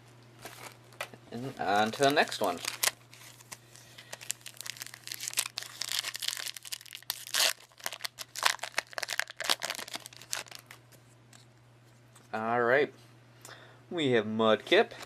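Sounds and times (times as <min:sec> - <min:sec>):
foil wrapper crinkling and tearing: 0:01.5 - 0:10.8.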